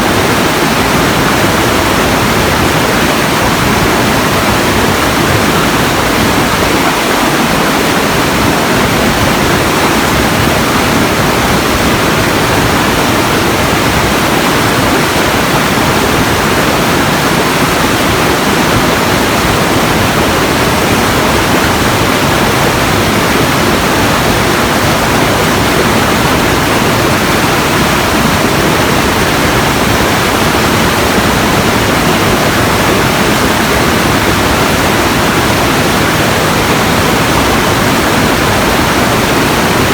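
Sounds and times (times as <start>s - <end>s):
steady loud rushing noise: 0.0s - 39.9s.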